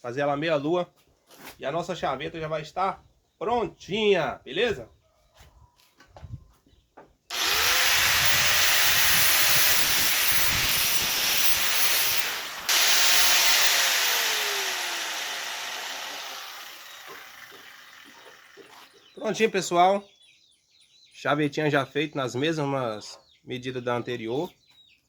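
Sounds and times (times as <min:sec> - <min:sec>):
angle grinder grinding steel: 0:07.3 - 0:18.9.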